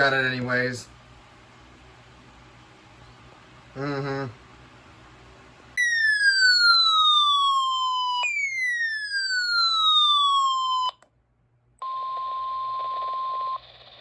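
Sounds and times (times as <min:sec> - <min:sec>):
steady warning alarm tone: 0:05.8 - 0:10.9
falling electronic siren tones: 0:05.8 - 0:11.0.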